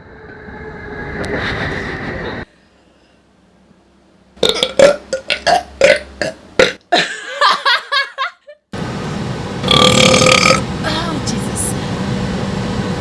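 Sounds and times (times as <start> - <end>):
woman burping: 4.4 - 7.1, 9.7 - 10.6.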